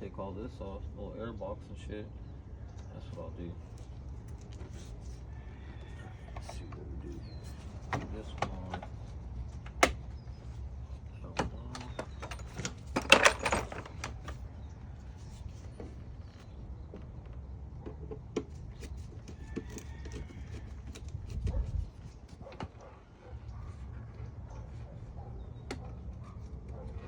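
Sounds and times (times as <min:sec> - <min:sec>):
tools and plastic parts clicking: 0:11.4 - 0:14.4.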